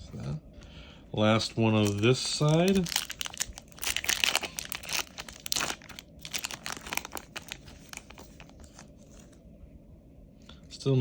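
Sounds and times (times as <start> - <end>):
packaging crinkling: 1.4 - 9.4.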